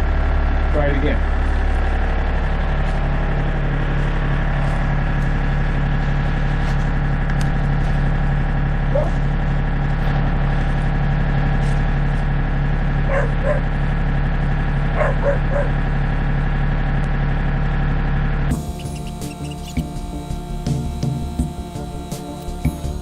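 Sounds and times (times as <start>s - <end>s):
tractor diesel engine running: 0.0s - 23.0s
dog barking: 8.9s - 9.2s, 13.1s - 13.7s, 15.0s - 15.8s.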